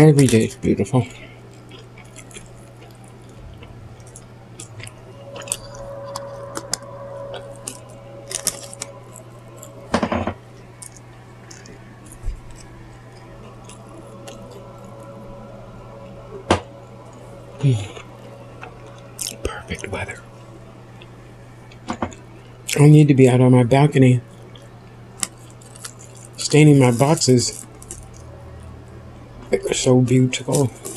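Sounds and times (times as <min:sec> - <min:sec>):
steady low hum: 0:00.0 - 0:30.9
chewing and crunching: 0:00.1 - 0:09.8, 0:10.6 - 0:15.1, 0:17.0 - 0:20.2, 0:24.3 - 0:28.3.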